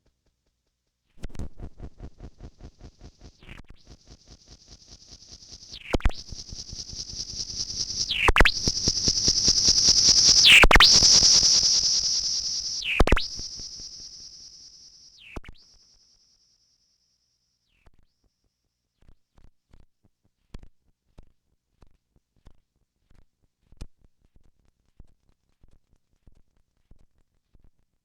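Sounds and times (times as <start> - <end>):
rapid electronic pulsing: 1.6 - 14.5
high whistling tone: 5.8 - 14.6.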